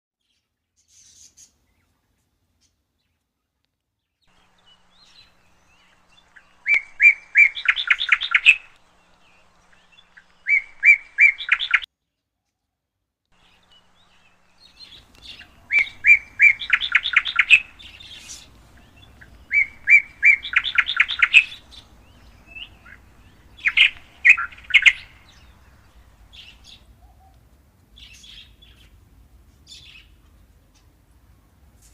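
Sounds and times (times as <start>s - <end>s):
songbird singing with trill: 4.2s - 11.9s, 13.4s - 27.4s, 28.0s - 29.0s
faint low hum: 13.4s - 31.9s.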